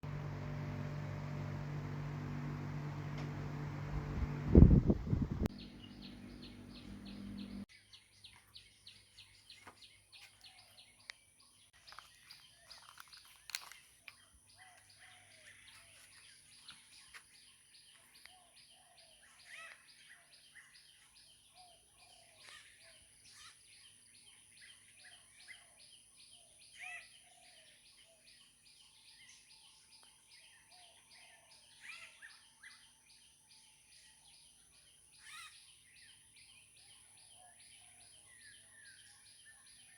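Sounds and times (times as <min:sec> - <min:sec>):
birds chirping: 0:00.0 - 0:28.5.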